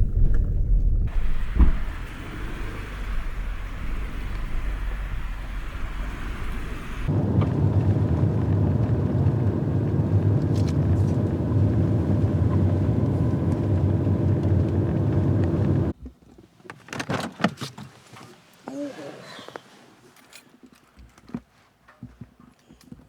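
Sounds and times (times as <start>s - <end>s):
car road and engine rumble: 0.0s - 16.0s.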